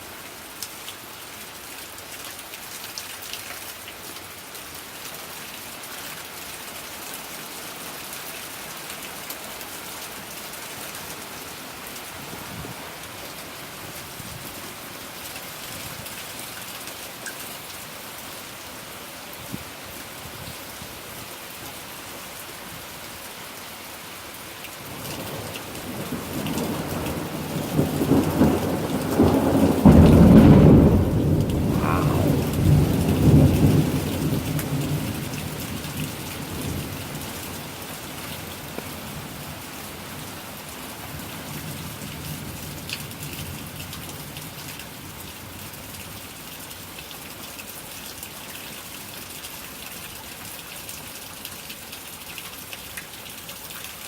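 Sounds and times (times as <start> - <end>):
steady rain falling: 0.0 - 54.0
thunder rumbling: 27.2 - 34.1.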